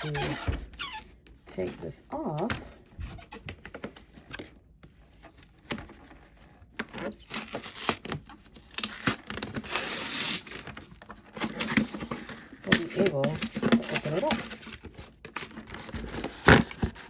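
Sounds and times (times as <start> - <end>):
loud packaging rustling: 4.4 - 17.0.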